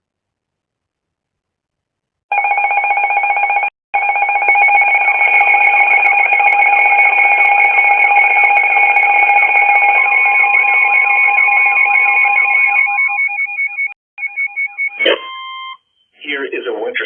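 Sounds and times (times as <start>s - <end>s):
harsh steady alarm tone: 2.3s - 15.8s.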